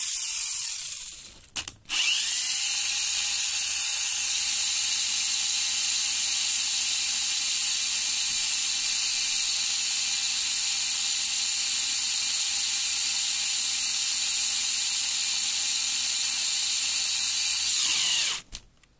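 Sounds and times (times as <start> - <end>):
toy car motor whirring: 0.0 - 7.1, 16.6 - 18.6.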